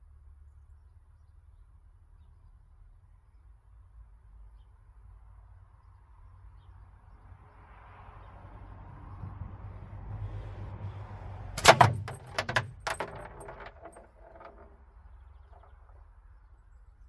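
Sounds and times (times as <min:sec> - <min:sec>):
steel ball hitting metal target: 0:11.6 - 0:14.7
target rattle jangling: 0:11.6 - 0:14.8.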